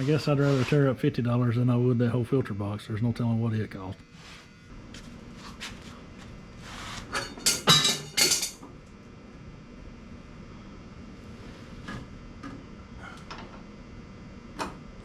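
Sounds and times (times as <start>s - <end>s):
hand tools clinking on metal: 7.2s - 8.6s.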